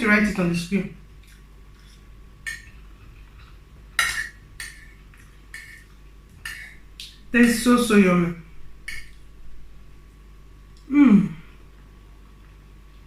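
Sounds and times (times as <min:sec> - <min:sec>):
spoon clinking against plate: 0:02.4 - 0:02.8, 0:04.0 - 0:06.8, 0:08.9 - 0:09.2.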